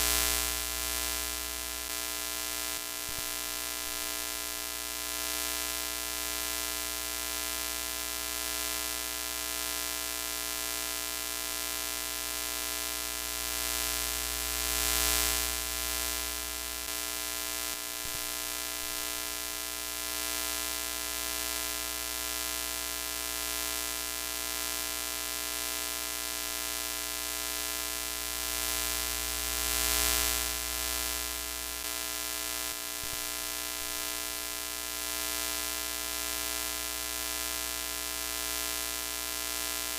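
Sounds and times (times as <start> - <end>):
static hiss: 0.0 - 1.5.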